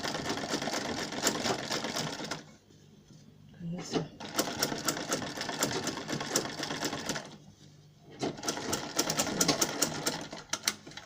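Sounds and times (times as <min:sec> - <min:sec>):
sewing machine stitching: 0:04.0 - 0:07.4, 0:08.1 - 0:11.0.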